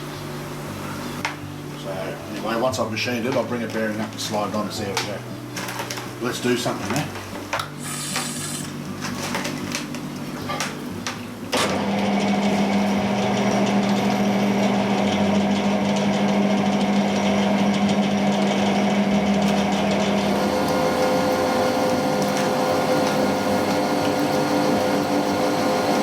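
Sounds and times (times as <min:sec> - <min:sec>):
metal lathe running: 0:11.6 - 0:26.0.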